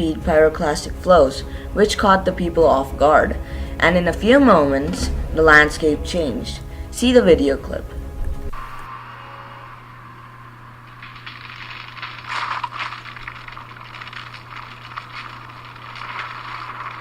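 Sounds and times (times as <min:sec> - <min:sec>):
steady low hum: 0:00.0 - 0:17.0
crackling rattling noise: 0:10.0 - 0:17.0.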